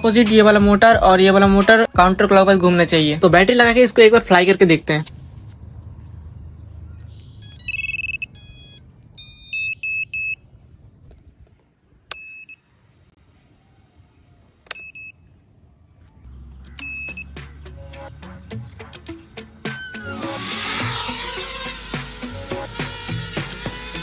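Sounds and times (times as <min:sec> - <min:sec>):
motor start-up beeps: 0:07.4 - 0:10.4, 0:16.7 - 0:24.0.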